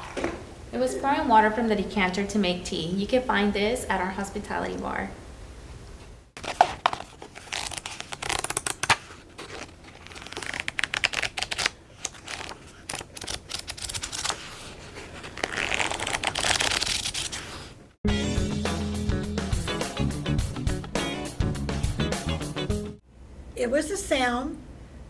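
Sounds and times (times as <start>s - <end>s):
book pages flicking: 6.4s - 14.7s, 15.3s - 17.6s
pages swishing: 6.4s - 17.8s.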